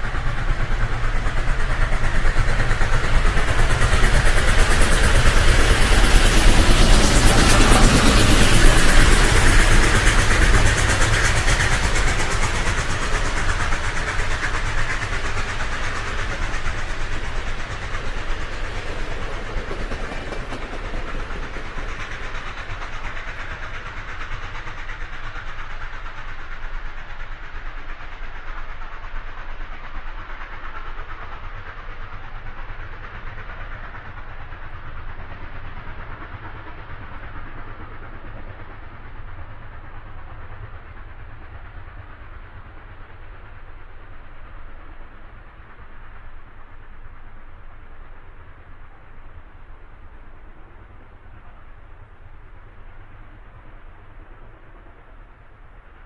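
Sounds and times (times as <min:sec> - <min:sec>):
rushing rumbling noise: 0:00.0 - 0:27.0.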